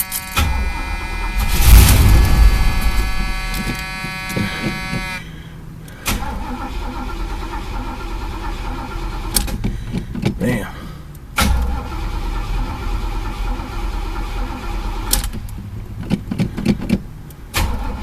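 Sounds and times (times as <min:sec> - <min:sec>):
car engine running loudly: 0:00.0 - 0:05.8
quiet steady noise: 0:00.0 - 0:18.0
starter cranking engine: 0:05.9 - 0:10.4, 0:11.4 - 0:18.0.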